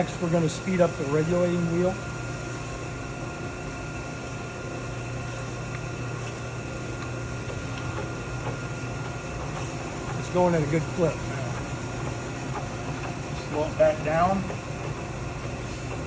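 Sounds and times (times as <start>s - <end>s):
grinder running with hum and whine: 0.0s - 16.0s.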